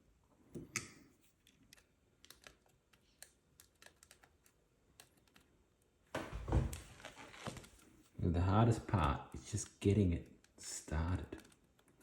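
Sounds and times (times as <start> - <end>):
fingers fiddling with tiny nut: 0.5 - 6.0, 8.9 - 12.0.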